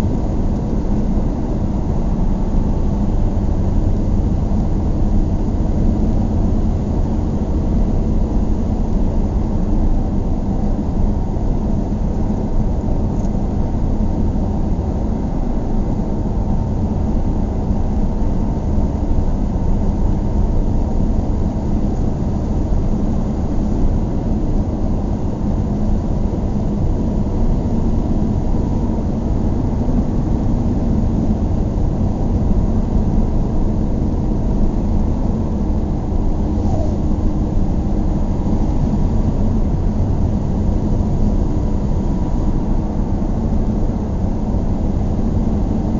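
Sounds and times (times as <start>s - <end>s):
car engine and road rumble: 0.0s - 45.9s
faint steady hum: 0.0s - 45.9s.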